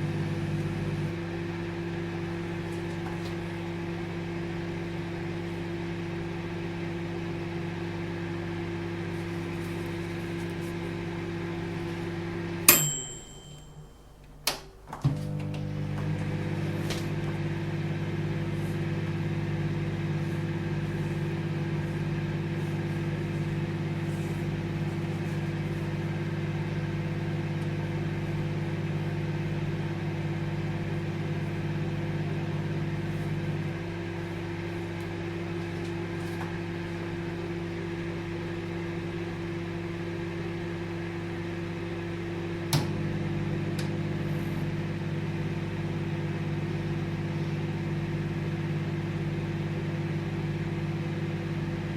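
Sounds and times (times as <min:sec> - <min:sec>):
microwave oven humming: 0:00.0 - 0:51.9
microwave sharp click: 0:12.7 - 0:15.7.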